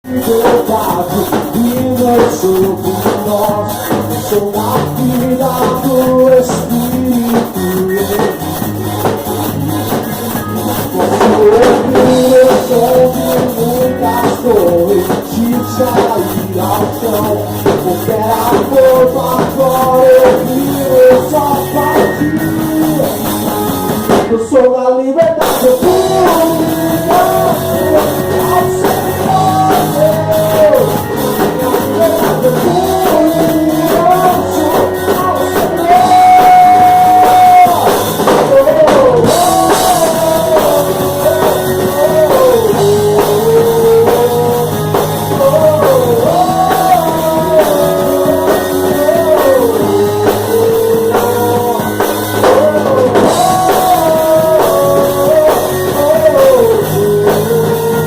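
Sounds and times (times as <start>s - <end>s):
live rock band playing: 0.0s - 58.0s.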